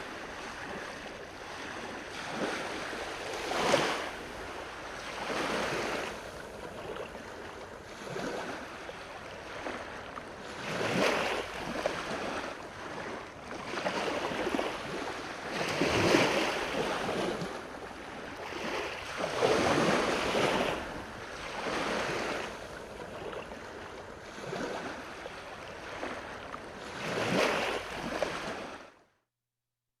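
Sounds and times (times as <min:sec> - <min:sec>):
waves washing in: 0:00.0 - 0:29.0.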